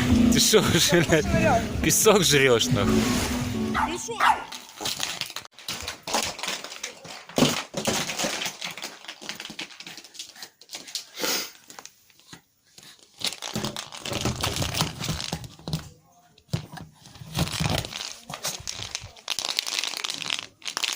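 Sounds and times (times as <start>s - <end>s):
paper or plastic crumpling: 4.5s - 15.8s, 17.0s - 20.9s.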